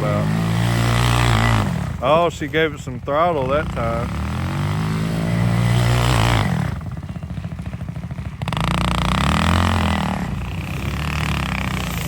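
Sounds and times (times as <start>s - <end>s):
atv engine revving: 0.0s - 12.0s.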